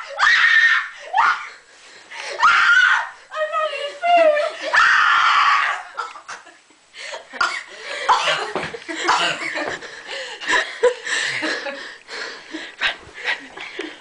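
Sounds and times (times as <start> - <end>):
girls laughing: 5.6 - 14.0
girls coughing: 7.4 - 9.7.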